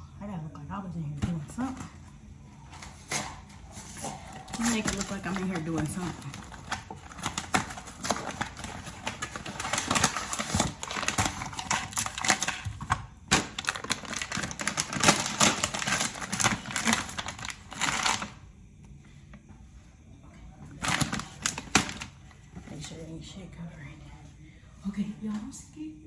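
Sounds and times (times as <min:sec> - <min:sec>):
kitchen items clattering: 0:01.2 - 0:18.4, 0:20.8 - 0:23.0.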